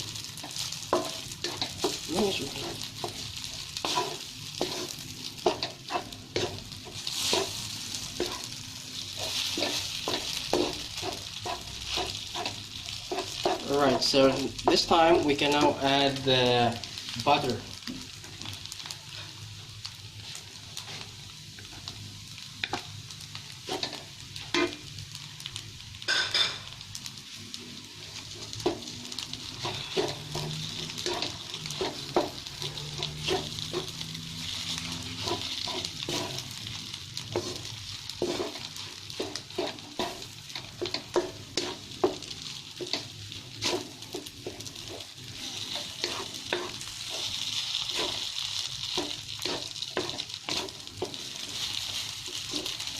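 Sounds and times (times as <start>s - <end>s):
food sizzling in a hot pan: 0.0s - 52.9s
spatula scraping and knocking pan: 0.4s - 14.9s, 29.5s - 52.9s.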